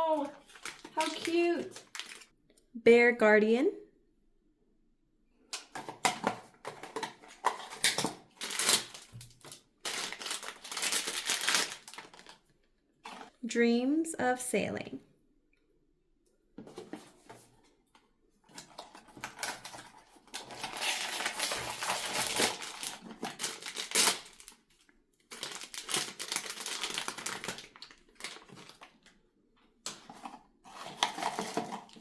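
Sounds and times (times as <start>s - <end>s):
packaging crinkling and tearing: 0.0s - 2.3s, 6.0s - 12.5s, 18.6s - 29.1s, 29.9s - 32.0s.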